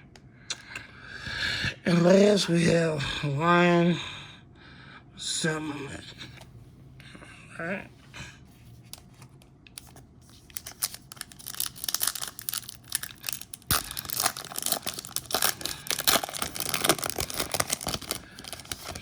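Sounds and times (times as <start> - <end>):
foil wrapper tearing and crinkling: 10.3 - 19.0.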